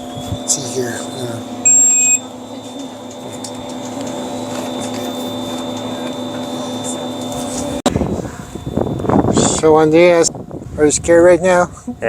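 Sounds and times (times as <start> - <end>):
chairlift machinery humming: 0.0 - 10.3.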